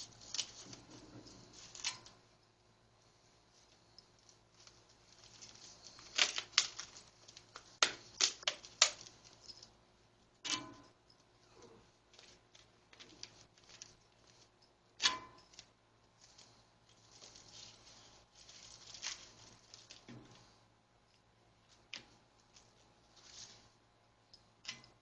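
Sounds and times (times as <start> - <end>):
small ticks and rustles: 0.0 - 9.8, 12.1 - 14.8, 15.4 - 25.0.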